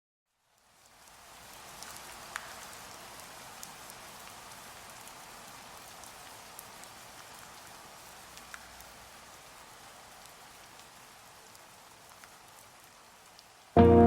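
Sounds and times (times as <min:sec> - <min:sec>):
steady rain falling: 0:00.3 - 0:14.0
sharp taps of raindrops: 0:01.8 - 0:02.8, 0:08.4 - 0:08.9.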